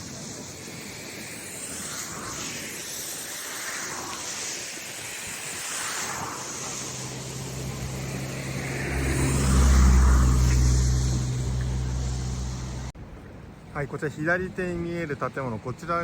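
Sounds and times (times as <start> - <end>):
wind hiss: 0.0 - 16.0
motor engine passing: 5.6 - 13.0.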